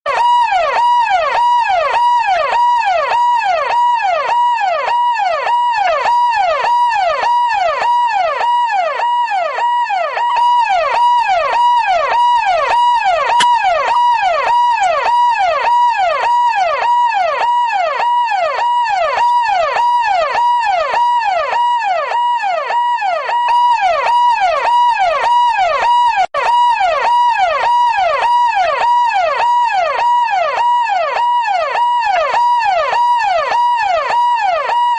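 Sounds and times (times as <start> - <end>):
police siren yelping: 0.1 - 34.9.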